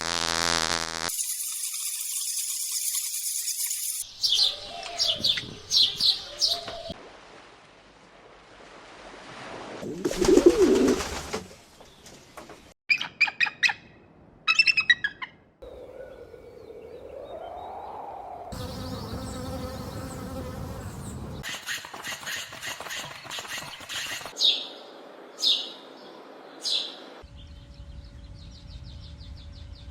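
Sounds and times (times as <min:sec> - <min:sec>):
small birds chirping: 0:04.0 - 0:07.0, 0:15.7 - 0:21.5.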